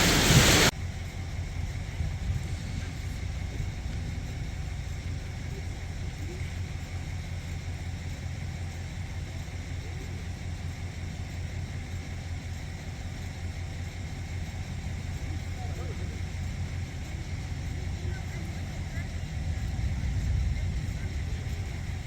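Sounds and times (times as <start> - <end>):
faint hiss: 0.0 - 0.7
vehicle engine idling: 0.0 - 22.0.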